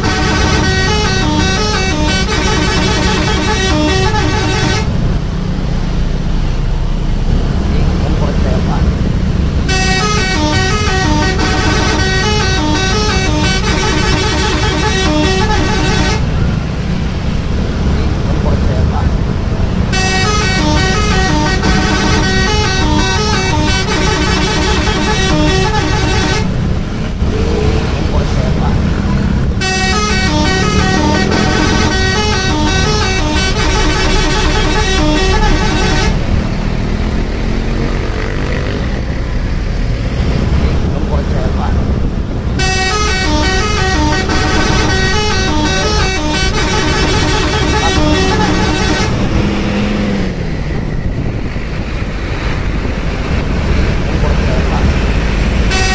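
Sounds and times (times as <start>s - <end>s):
musical air horn tune: 0.0s - 4.9s, 9.7s - 16.3s, 19.9s - 26.5s, 29.6s - 36.2s, 42.6s - 49.4s, 55.7s - 55.9s
engine and road noise: 0.0s - 55.9s.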